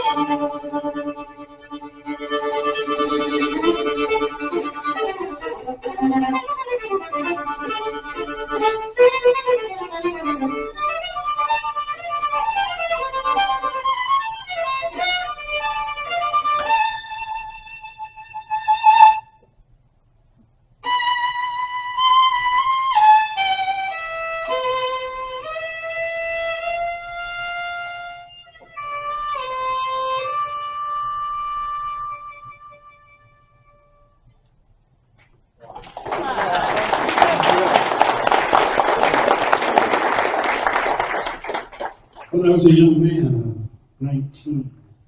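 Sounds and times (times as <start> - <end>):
violin melody: 0.0 - 19.5, 20.8 - 34.3.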